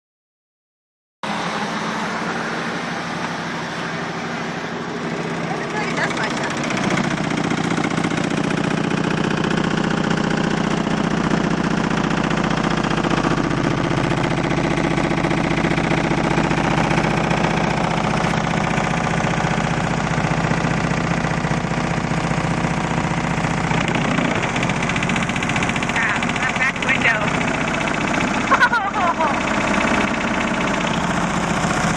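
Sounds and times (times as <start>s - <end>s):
distorted subwoofer bass rattle: 5.7s - 31.9s.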